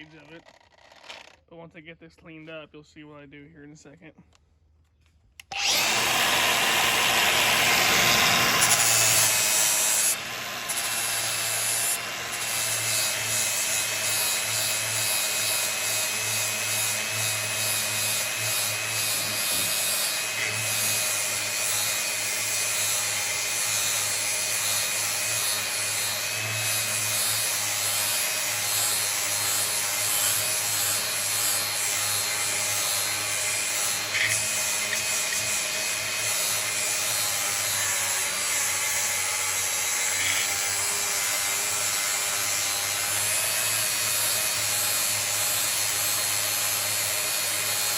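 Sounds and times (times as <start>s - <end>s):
grinder grinding steel: 5.4s - 47.9s.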